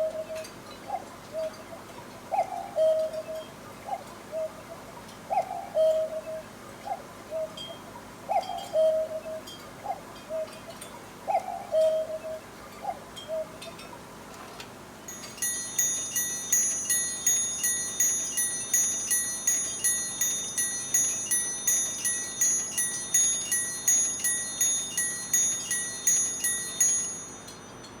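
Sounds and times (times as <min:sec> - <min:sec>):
small bell ringing: 0:15.1 - 0:28.0.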